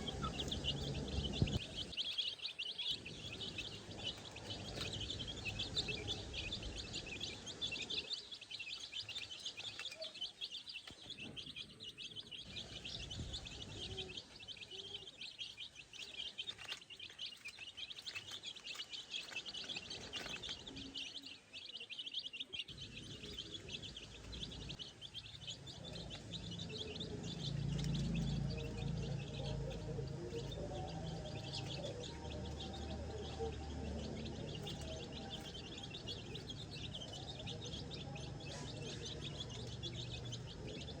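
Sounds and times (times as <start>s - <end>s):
low rumble: 0.0s - 2.0s
baby chicks peeping: 0.0s - 41.0s.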